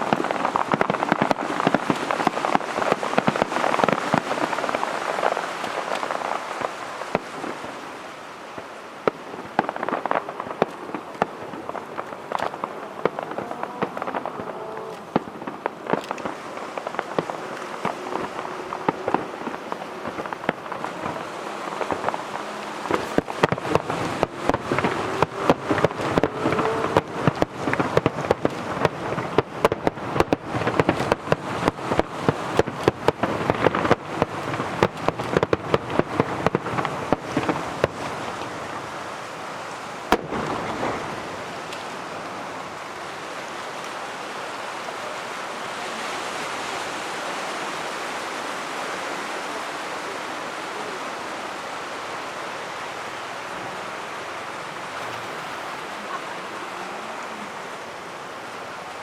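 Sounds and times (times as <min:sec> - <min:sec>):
fireworks bangs and crackles: 0:00.0 - 0:59.0
rushing background noise: 0:00.0 - 0:59.0.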